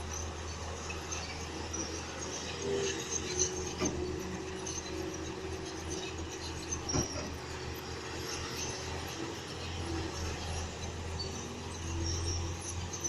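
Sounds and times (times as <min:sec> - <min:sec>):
metallic squeal: 0:00.0 - 0:13.0.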